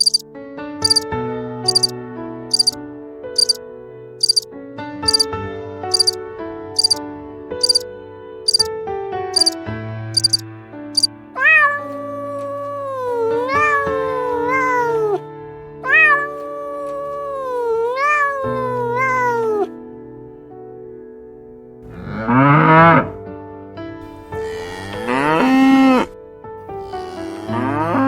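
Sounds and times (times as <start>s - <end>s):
cat meowing: 0.0s - 0.2s, 0.8s - 1.0s, 11.0s - 15.2s, 15.8s - 19.7s.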